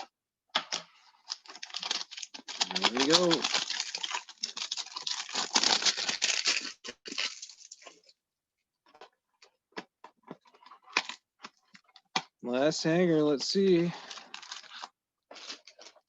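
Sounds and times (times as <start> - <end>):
packaging rustling: 1.2 - 8.1, 14.0 - 16.0
cardboard tearing: 1.3 - 7.8.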